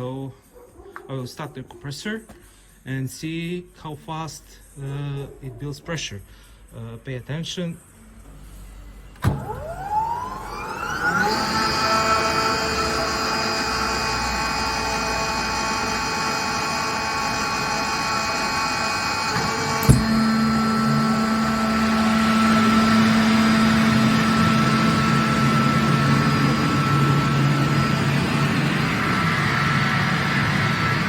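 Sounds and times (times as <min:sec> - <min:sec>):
machine hum: 0:07.9 - 0:31.0
air compressor hissing: 0:08.3 - 0:31.0
motor starting clunk: 0:08.3 - 0:31.0.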